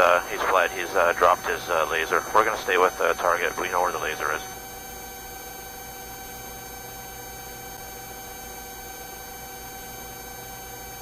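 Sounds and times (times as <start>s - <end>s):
helicopter cabin hum: 0.0s - 5.0s.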